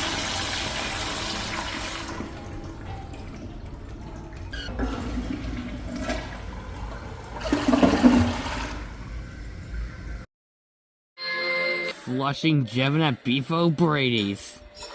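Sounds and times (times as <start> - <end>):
toilet flushing: 0.0 - 10.0.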